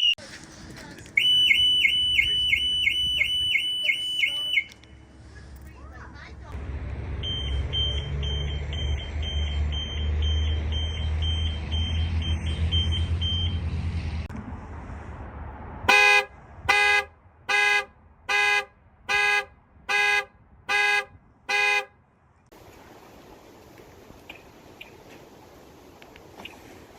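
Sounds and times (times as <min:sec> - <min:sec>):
car alarm siren beeping rapidly: 0:01.2 - 0:04.7, 0:07.2 - 0:13.6
car horn honks: 0:15.9 - 0:22.0.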